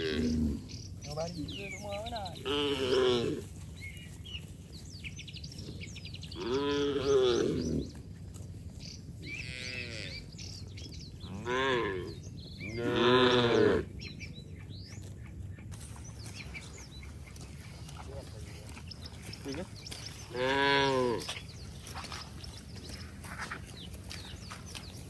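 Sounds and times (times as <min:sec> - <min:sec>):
cattle mooing: 0:00.0 - 0:00.7, 0:02.3 - 0:03.5, 0:06.4 - 0:08.0, 0:09.3 - 0:10.3, 0:11.2 - 0:13.9, 0:20.2 - 0:21.3.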